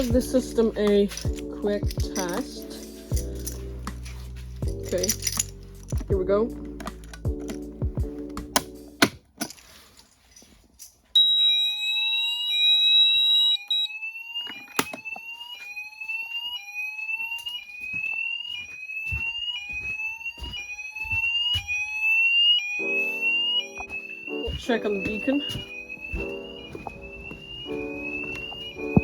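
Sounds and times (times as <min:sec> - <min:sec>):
steady high alarm tone: 0:00.0 - 0:03.6, 0:11.2 - 0:29.0
lower alarm tone: 0:11.2 - 0:29.0
rising sweep alarm tone: 0:11.2 - 0:29.0.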